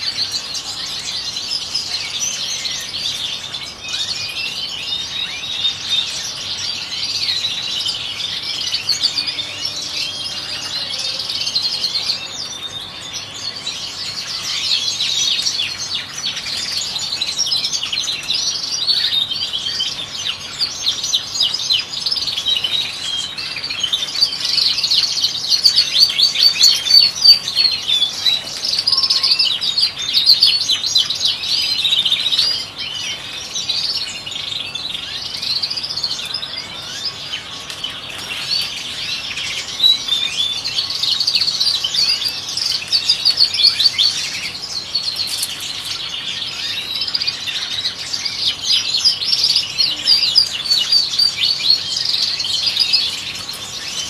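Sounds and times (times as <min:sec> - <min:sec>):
goldfinches twittering: 0:00.0 - 0:54.0.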